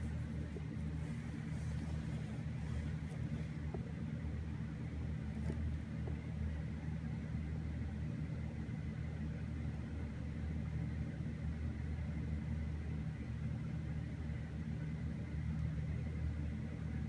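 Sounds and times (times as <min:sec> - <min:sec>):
low rumbling hum: 0:00.0 - 0:06.8.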